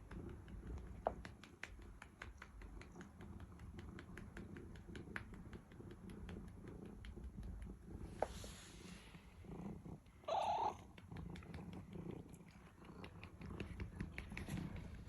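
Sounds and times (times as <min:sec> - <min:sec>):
cat purring: 0:00.0 - 0:15.0.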